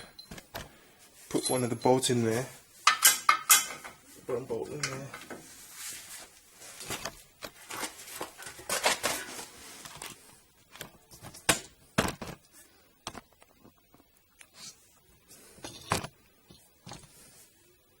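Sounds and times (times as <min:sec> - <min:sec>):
metal tools clinking: 0:01.3 - 0:04.0.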